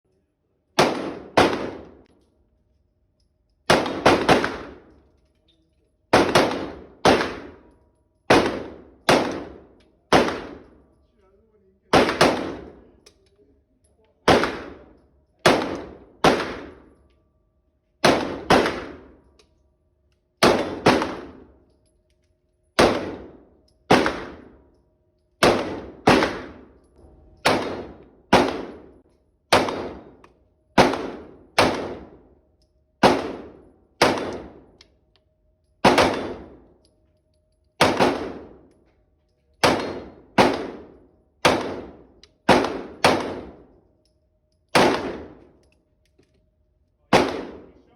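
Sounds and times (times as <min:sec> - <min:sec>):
pistol shots: 0:00.8 - 0:02.1, 0:03.6 - 0:05.1, 0:06.1 - 0:07.7, 0:08.3 - 0:10.8, 0:11.9 - 0:13.0, 0:14.2 - 0:17.0, 0:18.0 - 0:19.3, 0:20.4 - 0:21.6, 0:22.8 - 0:24.7, 0:25.4 - 0:32.4, 0:33.0 - 0:34.8, 0:35.8 - 0:36.9, 0:37.8 - 0:38.7, 0:39.6 - 0:43.8, 0:44.7 - 0:45.7, 0:47.1 - 0:47.9.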